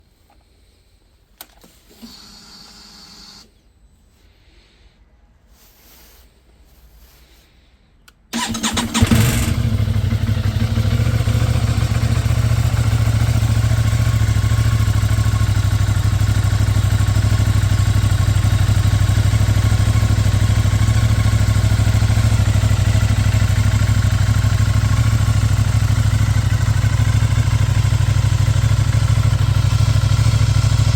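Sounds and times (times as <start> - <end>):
engine starter cranking: 8.3 - 9.8
motorcycle engine idling: 8.3 - 30.9.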